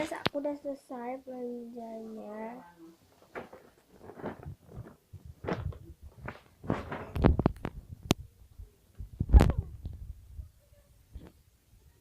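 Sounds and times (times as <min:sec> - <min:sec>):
soft knocks and rustles: 0:03.1 - 0:07.8.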